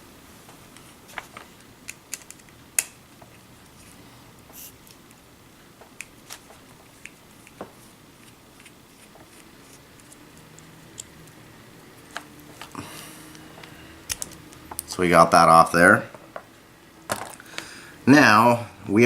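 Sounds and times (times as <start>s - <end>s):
plastic parts handled: 0.7s - 3.9s, 5.8s - 14.9s, 17.1s - 17.6s.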